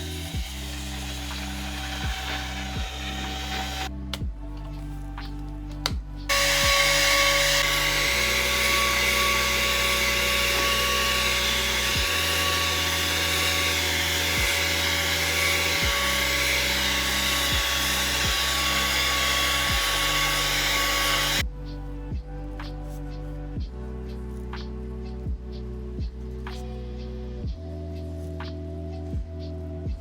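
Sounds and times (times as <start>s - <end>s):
small electric motor whining: 0.0s - 4.0s, 6.3s - 21.4s
background music with bass: 0.0s - 30.0s.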